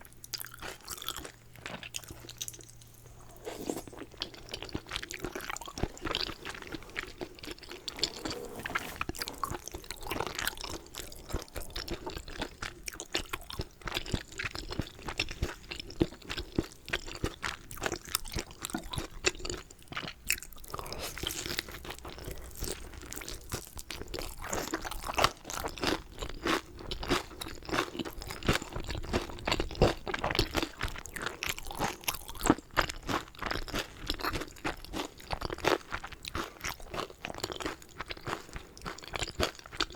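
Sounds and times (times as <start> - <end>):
person chewing and biting food: 0.3 - 9.5.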